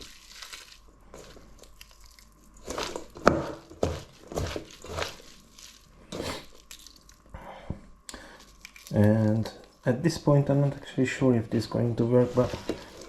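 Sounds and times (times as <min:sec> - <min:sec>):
mixture stirred in a bowl: 0:00.0 - 0:07.3, 0:11.7 - 0:13.0.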